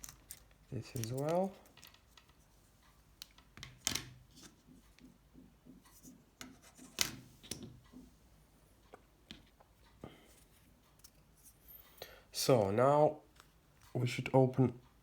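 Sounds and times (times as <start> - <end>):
phone parts clicking: 0.0 - 2.2.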